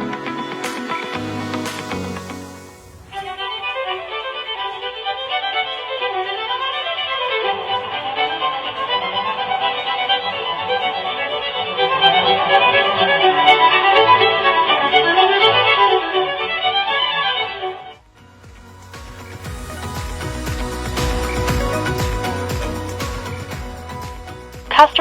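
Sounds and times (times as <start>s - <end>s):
violin melody through speaker: 3.0s - 18.0s.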